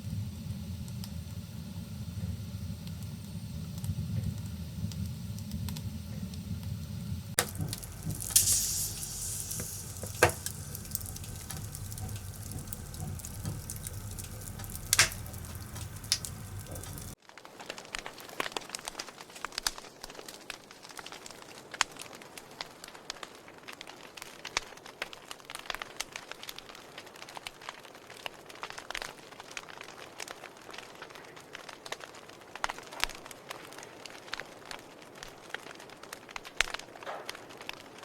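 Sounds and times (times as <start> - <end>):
fire flames rumbling: 0.0 - 17.2
fire hissing: 0.0 - 17.2
wood crackling and popping: 0.0 - 18.2.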